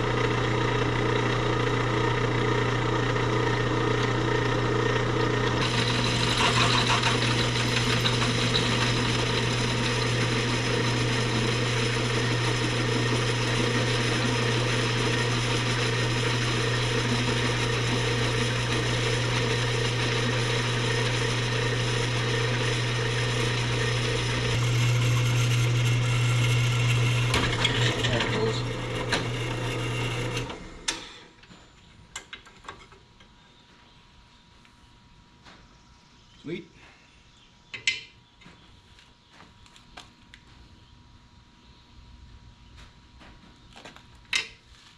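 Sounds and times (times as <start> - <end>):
machine motor humming and clattering: 3.8 - 31.6.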